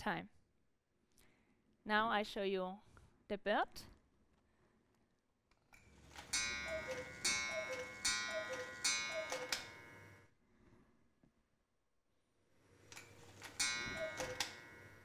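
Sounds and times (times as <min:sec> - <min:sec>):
cuckoo clock calling: 0:06.1 - 0:10.2, 0:13.0 - 0:15.0.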